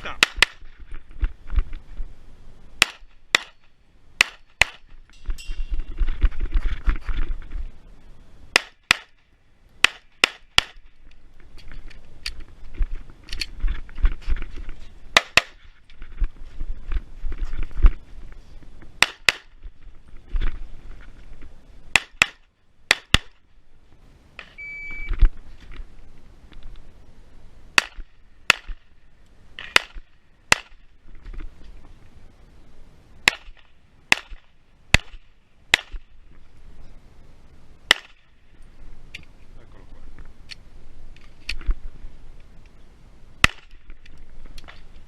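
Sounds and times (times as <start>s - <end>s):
short electronic beep: 24.6s - 25.2s.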